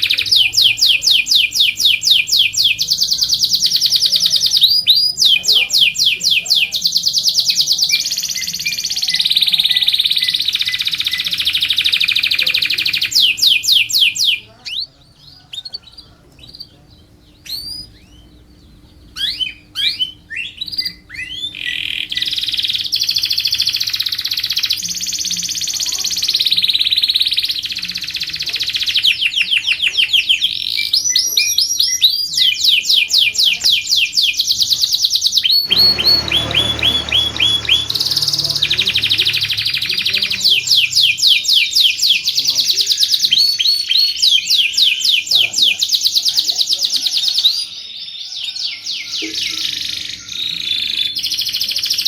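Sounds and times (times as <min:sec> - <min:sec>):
canary singing with trills: 0:00.0 - 0:52.0
low rumbling noise: 0:35.6 - 0:41.1.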